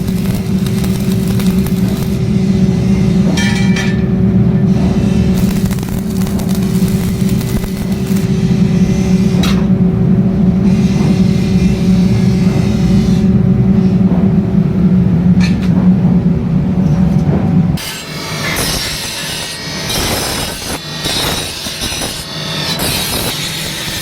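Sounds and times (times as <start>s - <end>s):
machine humming: 0.0s - 24.0s
tool rasping and scraping: 4.8s - 9.6s, 17.8s - 24.0s.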